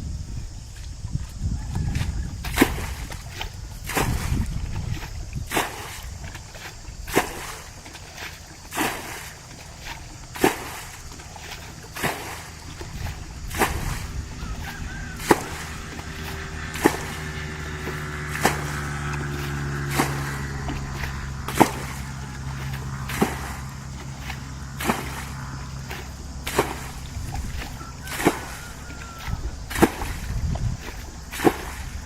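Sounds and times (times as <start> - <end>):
motor drone: 12.4 - 32.0
sharp slaps or knocks: 15.2 - 15.7, 16.8 - 17.3, 17.9 - 18.9, 21.5 - 22.0, 24.8 - 25.3, 26.5 - 27.0, 29.7 - 30.3.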